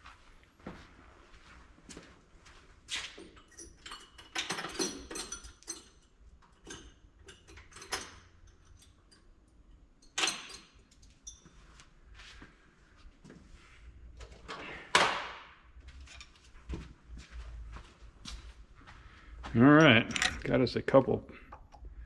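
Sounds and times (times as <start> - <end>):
steel punches clinking and rattling: 3.3 - 9.2, 19.8 - 20.6.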